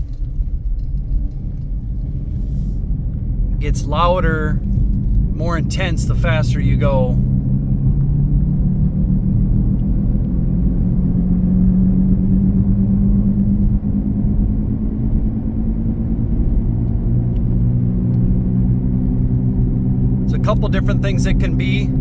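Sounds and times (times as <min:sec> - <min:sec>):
low growling hum: 0:00.0 - 0:20.5.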